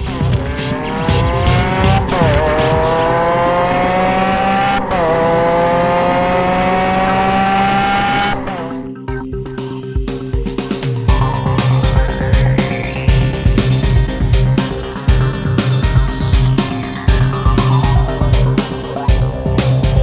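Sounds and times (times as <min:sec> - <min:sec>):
racing car engine revving: 0:00.0 - 0:08.9
background music: 0:00.0 - 0:20.0.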